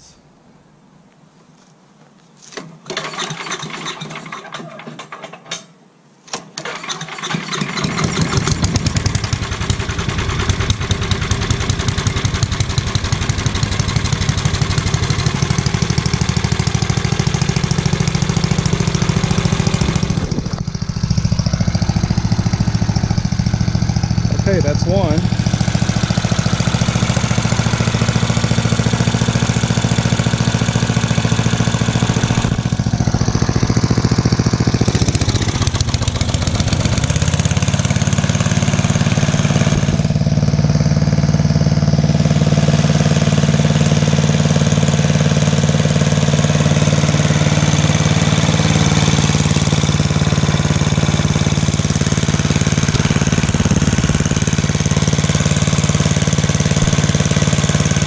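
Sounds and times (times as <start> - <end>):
single-cylinder engine running: 2.9 - 4.8, 6.6 - 58.0.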